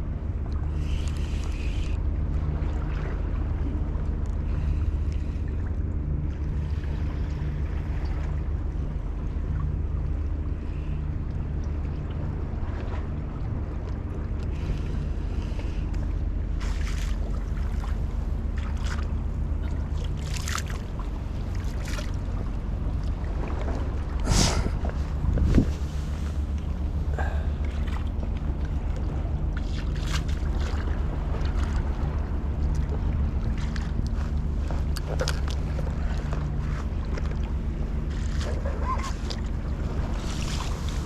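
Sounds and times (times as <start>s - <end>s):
low engine drone: 0.0s - 41.0s
wind on microphone: 24.0s - 27.4s.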